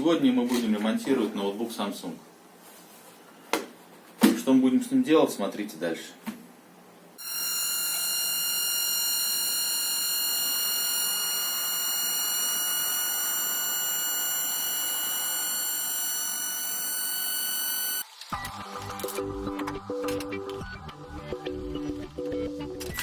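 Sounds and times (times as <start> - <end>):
laptop fan whining: 7.2 - 19.3.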